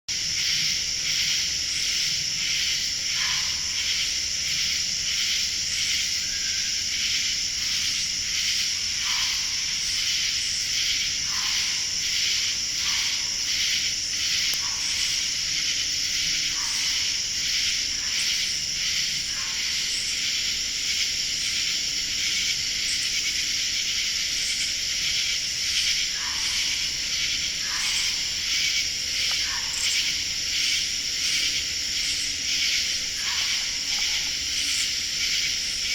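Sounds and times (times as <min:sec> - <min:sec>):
shrill pulsing animal chorus: 0:25.2 - 0:35.9.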